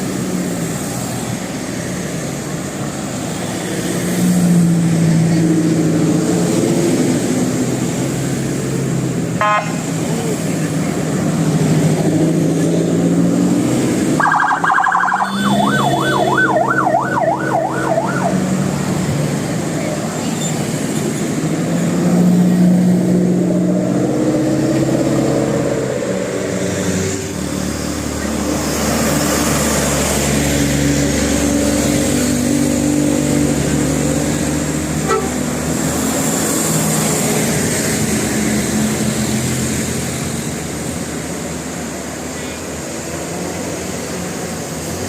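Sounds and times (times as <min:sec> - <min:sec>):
bus engine running: 0:00.0 - 0:45.0
musical air horn playing tune: 0:35.0 - 0:35.5.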